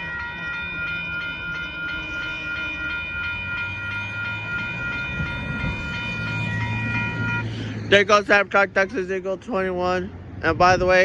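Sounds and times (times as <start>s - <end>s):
steady high ringing tone: 0.0s - 8.1s
passenger train going by: 0.0s - 11.0s.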